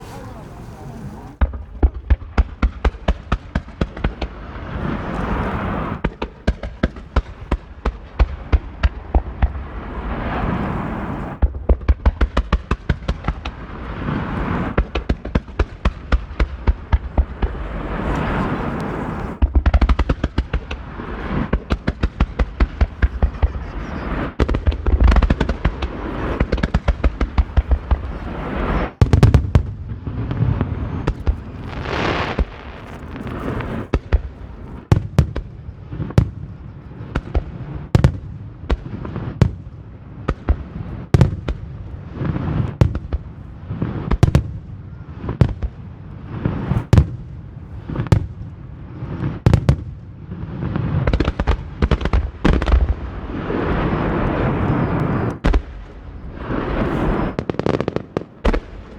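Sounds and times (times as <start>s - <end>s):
booming firework shell bursts: 0.0s - 36.4s
fireworks cracking bursts: 0.0s - 44.6s, 45.2s - 58.9s
fireworks crackling: 0.0s - 58.9s.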